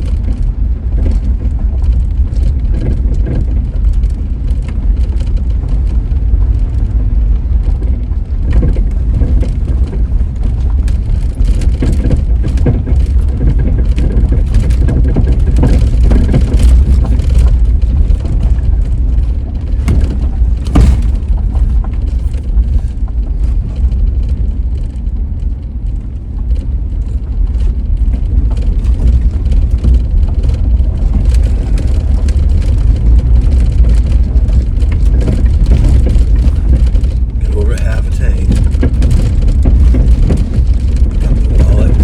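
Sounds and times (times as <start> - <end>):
truck engine and tyres rumbling: 0.0 - 42.0
truck jolting knocks: 8.4 - 23.9.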